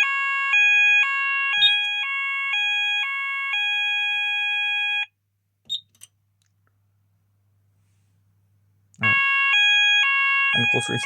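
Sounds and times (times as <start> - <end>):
two-pitch evacuation alarm tone: 0.0 - 5.1, 9.0 - 11.0.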